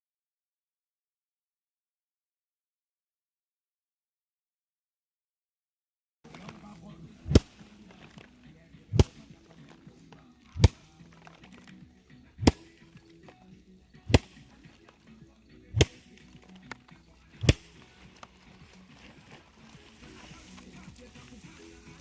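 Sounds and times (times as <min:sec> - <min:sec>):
sharp loud strikes: 0:07.2 - 0:07.6, 0:12.4 - 0:12.8, 0:14.1 - 0:14.5, 0:15.7 - 0:16.2, 0:17.4 - 0:17.8.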